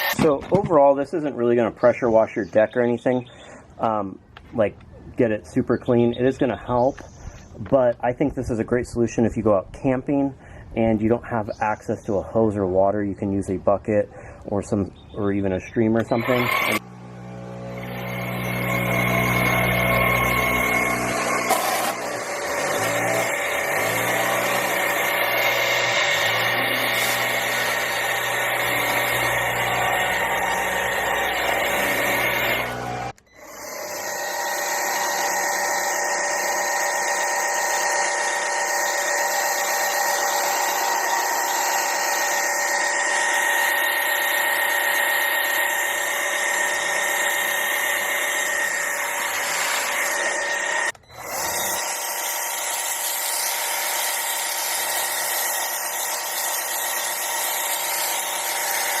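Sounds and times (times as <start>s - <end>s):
pressure washer pump whine: 16.0s - 59.0s.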